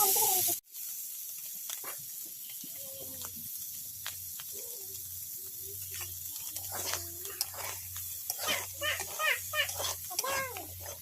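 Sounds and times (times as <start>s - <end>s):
cooking pan sizzling: 0.0s - 11.0s.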